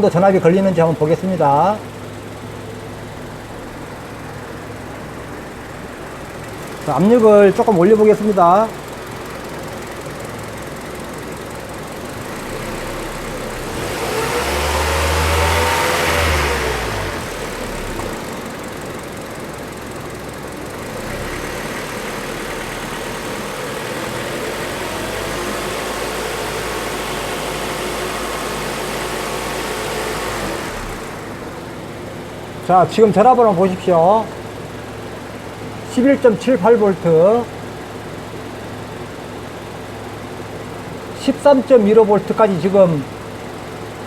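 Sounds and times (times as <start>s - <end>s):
car engine idling and revving: 0.0s - 44.0s
electric cooling fan: 3.4s - 32.8s.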